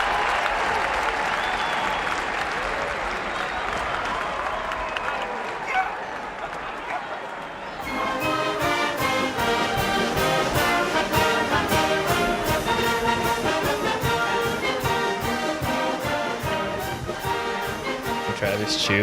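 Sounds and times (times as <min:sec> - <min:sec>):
brass-led orchestral music: 0:07.8 - 0:19.0.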